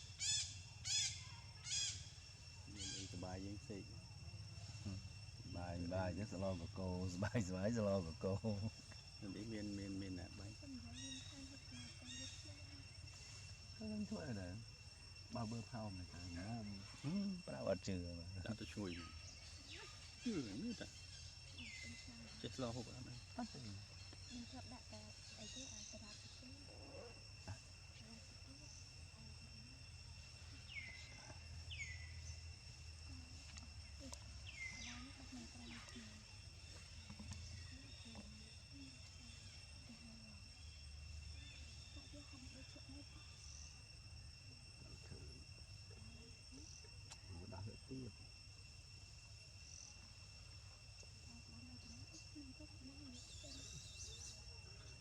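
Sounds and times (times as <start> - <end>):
high-pitched insect drone: 0.0 - 55.0
faint low voices: 15.3 - 20.9.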